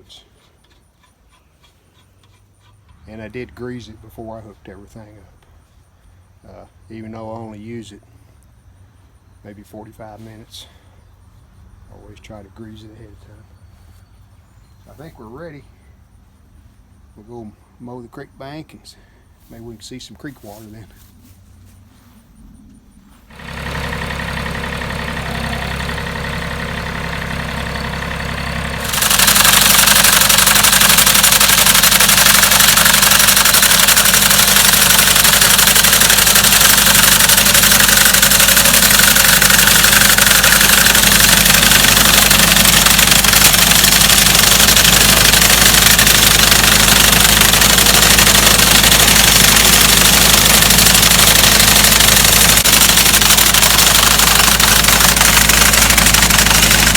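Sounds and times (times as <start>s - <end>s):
tractor diesel engine running: 23.3s - 56.9s.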